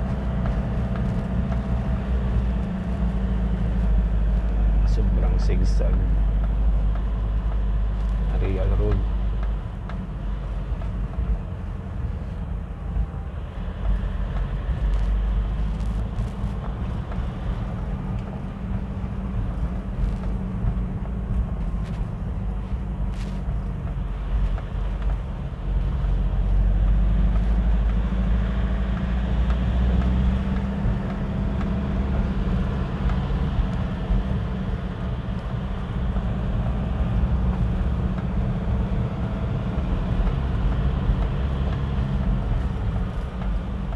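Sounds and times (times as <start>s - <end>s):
car engine and road noise: 0.0s - 43.9s.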